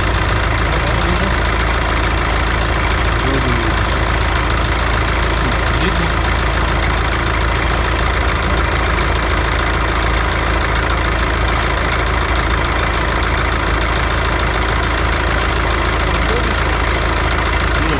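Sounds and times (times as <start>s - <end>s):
car engine idling: 0.0s - 17.9s
faint fine ticking: 0.0s - 17.9s.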